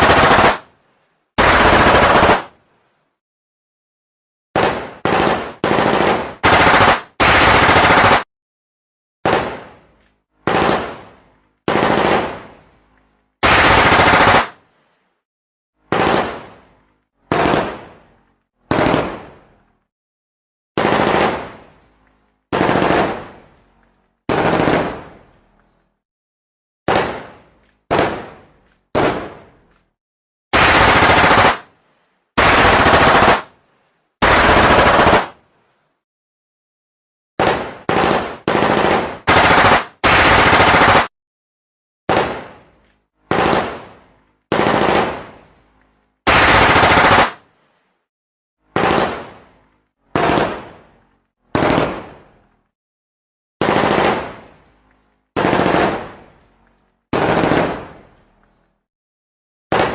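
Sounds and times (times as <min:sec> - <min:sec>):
automatic gunfire bursts: 0:00.0 - 0:00.6, 0:01.4 - 0:02.5, 0:04.6 - 0:08.2, 0:10.4 - 0:11.0, 0:11.7 - 0:12.4, 0:13.4 - 0:14.6, 0:15.9 - 0:16.4, 0:17.3 - 0:17.8, 0:18.7 - 0:19.2, 0:20.8 - 0:21.5, 0:22.5 - 0:23.3, 0:24.3 - 0:25.1, 0:27.9 - 0:28.2, 0:28.9 - 0:29.3, 0:30.6 - 0:31.7, 0:32.4 - 0:33.5, 0:34.2 - 0:35.4, 0:37.4 - 0:41.1, 0:43.3 - 0:43.8, 0:44.5 - 0:45.3, 0:46.3 - 0:47.4, 0:48.8 - 0:49.3, 0:50.2 - 0:50.6, 0:51.6 - 0:52.1, 0:53.6 - 0:54.4, 0:55.4 - 0:56.1, 0:57.1 - 0:57.9
gunshots: 0:00.0 - 0:00.7, 0:01.4 - 0:02.6, 0:04.6 - 0:08.3, 0:09.2 - 0:09.8, 0:10.4 - 0:12.6, 0:13.4 - 0:14.6, 0:15.9 - 0:16.7, 0:17.3 - 0:18.0, 0:18.7 - 0:19.5, 0:20.8 - 0:21.6, 0:22.5 - 0:23.5, 0:24.3 - 0:25.3, 0:26.9 - 0:29.6, 0:30.6 - 0:31.7, 0:32.4 - 0:33.5, 0:34.2 - 0:35.4, 0:37.4 - 0:41.1, 0:42.1 - 0:42.7, 0:43.3 - 0:45.4, 0:46.3 - 0:47.4, 0:48.7 - 0:49.5, 0:50.1 - 0:50.9, 0:51.5 - 0:52.3, 0:53.6 - 0:54.5, 0:55.4 - 0:56.3, 0:57.1 - 0:58.1.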